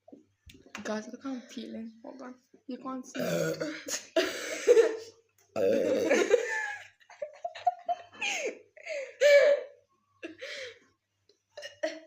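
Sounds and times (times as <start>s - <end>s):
burp: 3.2s - 3.8s, 5.6s - 6.4s
people laughing and giggling: 3.7s - 5.1s, 5.8s - 9.6s.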